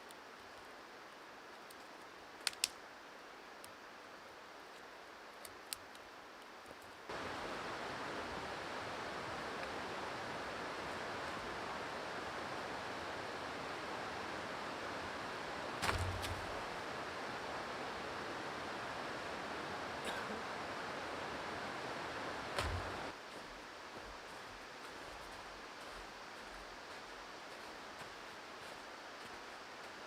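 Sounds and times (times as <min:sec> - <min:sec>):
outdoor hiss: 0:00.0 - 0:30.0
faint sharp clicks: 0:01.6 - 0:02.8.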